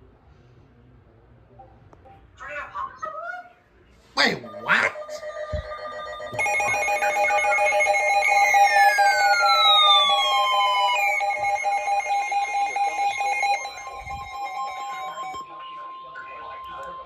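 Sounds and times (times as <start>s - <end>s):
electronic warbling alert tone: 4.2s - 15.4s
falling whistle-like glide: 8.1s - 12.9s.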